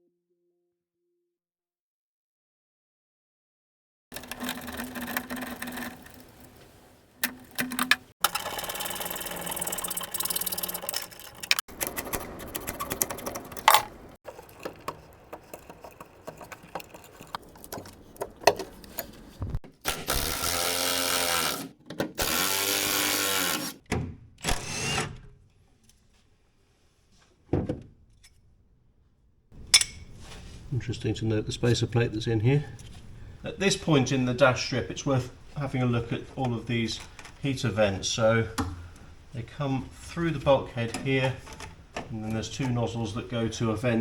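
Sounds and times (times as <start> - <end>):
hand tools clicking and rattling: 7.2 - 19.4
power screwdriver whining: 19.8 - 23.8, 24.5 - 25.1.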